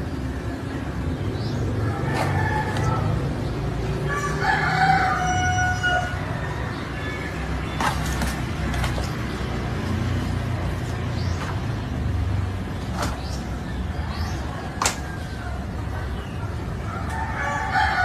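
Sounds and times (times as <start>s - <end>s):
rooster crowing: 1.8s - 3.3s, 4.0s - 7.4s, 16.8s - 18.0s.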